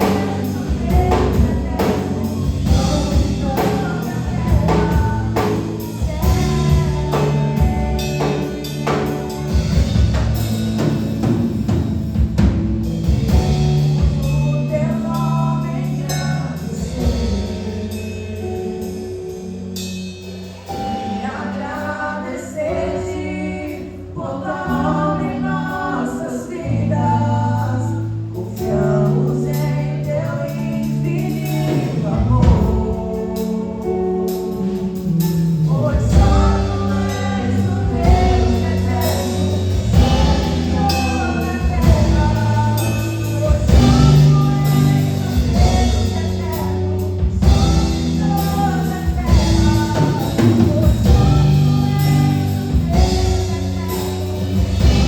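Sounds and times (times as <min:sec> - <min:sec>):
voices singing together: 0:00.0 - 0:10.4, 0:20.7 - 0:34.7, 0:35.7 - 0:55.0
gospel band playing: 0:00.0 - 0:55.0.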